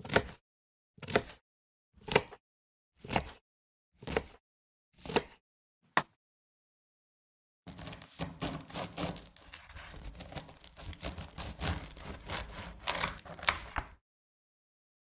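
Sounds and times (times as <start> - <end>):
knife cutting on a board: 0.0 - 0.4, 1.0 - 1.4, 2.0 - 2.4, 3.0 - 3.4, 4.0 - 4.4, 5.0 - 5.4, 7.7 - 14.0.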